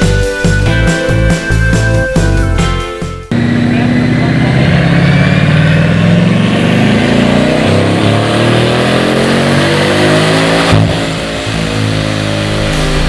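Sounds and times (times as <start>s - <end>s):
car engine accelerating: 3.3s - 13.0s.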